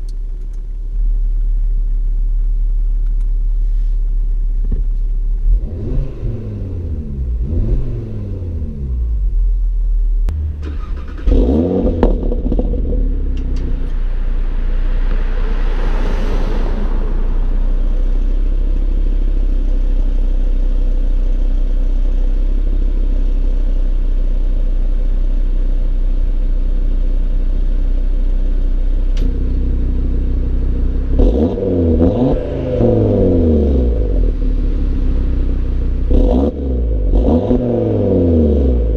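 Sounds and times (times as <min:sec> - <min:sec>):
car engine accelerating through gears: 0:05.4 - 0:09.4, 0:10.3 - 0:20.1, 0:29.1 - 0:38.9
rushing noise: 0:10.3 - 0:19.4.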